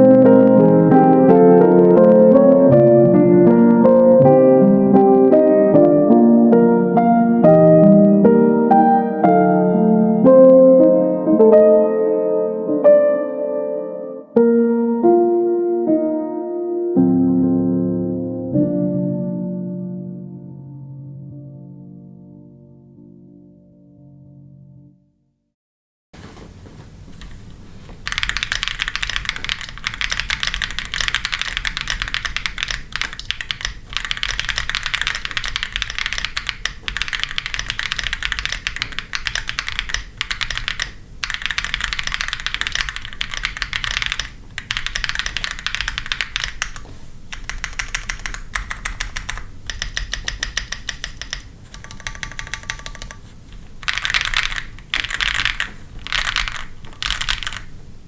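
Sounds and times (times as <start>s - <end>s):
mechanical keyboard typing: 0.0s - 2.8s, 28.0s - 57.8s.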